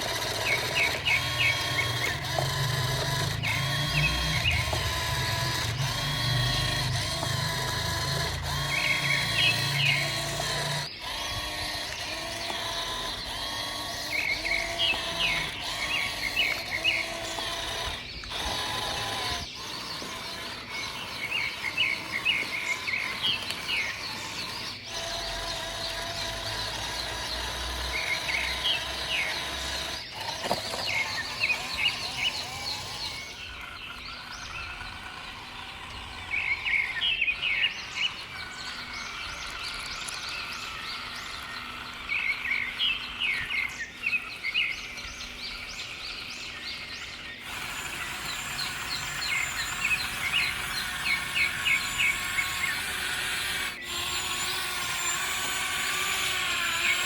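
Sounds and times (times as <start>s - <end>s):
outdoor background noise: 0.0s - 57.0s
small birds chirping: 0.0s - 57.0s.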